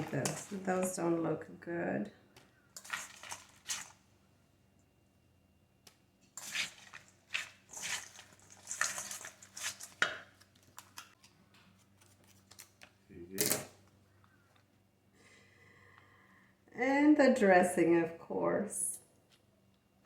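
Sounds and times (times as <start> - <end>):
lettuce and packaging rustling: 2.8 - 4.0, 6.4 - 13.0.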